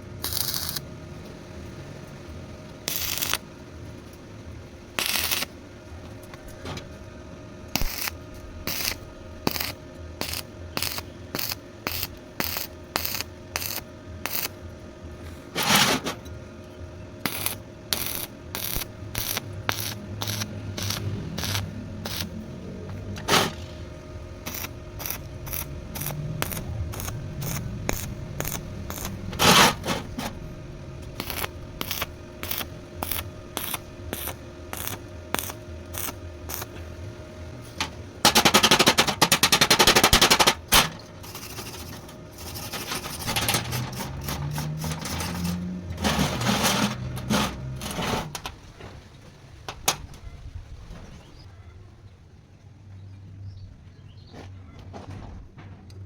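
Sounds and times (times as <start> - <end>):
steady low hum: 0.0 - 54.7.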